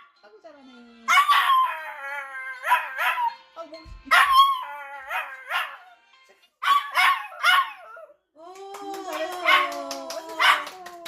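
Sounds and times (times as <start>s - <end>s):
dog howling and yipping: 1.1s - 3.3s, 4.2s - 5.8s.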